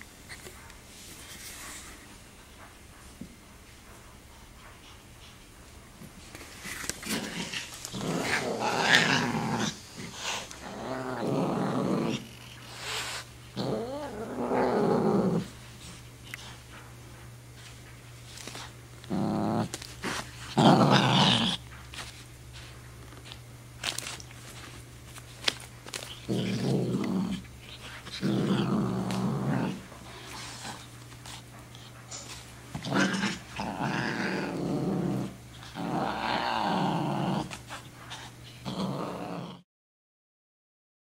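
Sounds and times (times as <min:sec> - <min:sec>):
cat growling: 0:07.1 - 0:15.5, 0:26.2 - 0:30.8, 0:32.8 - 0:37.6.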